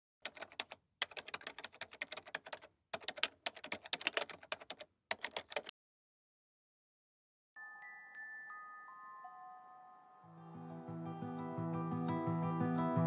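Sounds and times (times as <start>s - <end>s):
computer keyboard typing: 0.2s - 5.7s.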